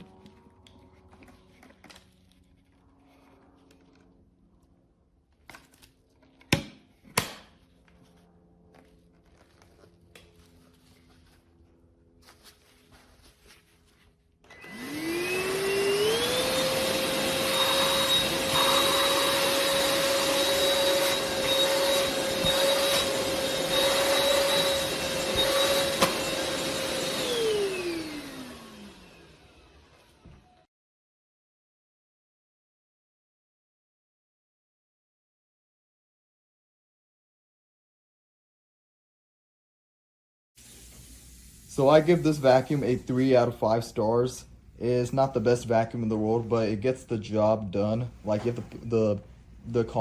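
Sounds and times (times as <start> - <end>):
stick vacuum motor whining: 14.4 - 30.6.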